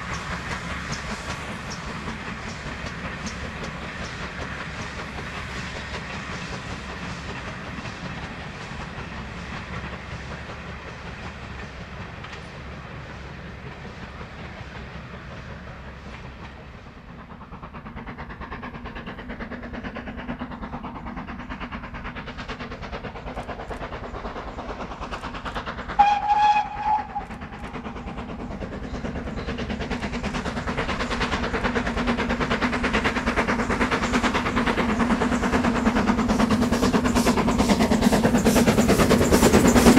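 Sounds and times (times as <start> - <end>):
steam train running: 0.0 - 39.9
steam whistle blast: 26.0 - 27.3.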